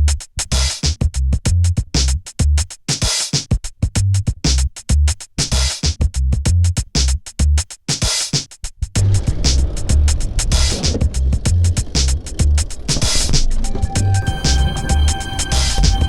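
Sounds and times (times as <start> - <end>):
hip hop drum-machine beat: 0.2 - 16.0
steady noise: 13.0 - 16.0.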